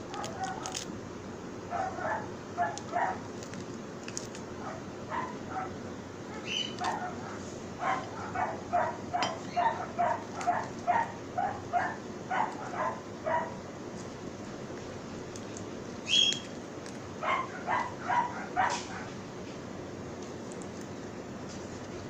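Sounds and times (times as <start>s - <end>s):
dog yapping: 0.1s - 0.8s, 1.7s - 3.3s, 4.6s - 13.6s, 17.2s - 19.2s.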